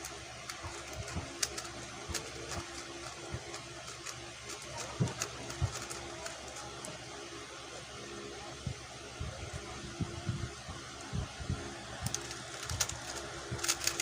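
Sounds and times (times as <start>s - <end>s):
steady faint hum: 0.0s - 14.0s
plastic puzzle cube clicking: 0.5s - 6.6s, 12.0s - 14.0s.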